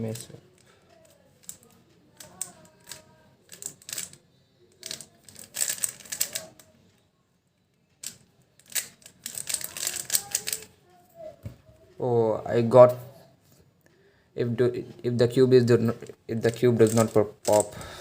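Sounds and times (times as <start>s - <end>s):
plastic puzzle clicking: 0.2s - 6.8s, 8.0s - 10.7s, 16.5s - 17.9s.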